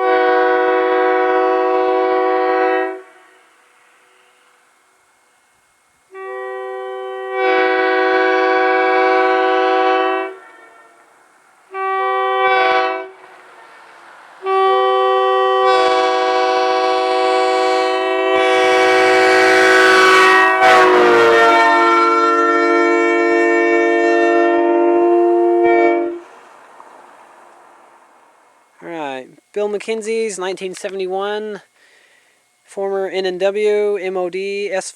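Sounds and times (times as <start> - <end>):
locomotive air horn blasts: 0.0 - 5.3, 6.0 - 26.4.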